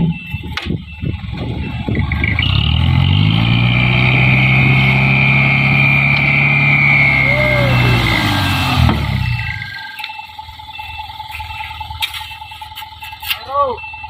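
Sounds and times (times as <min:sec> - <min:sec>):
diesel engine revving: 0:00.0 - 0:14.0
steady high whine: 0:04.4 - 0:13.1.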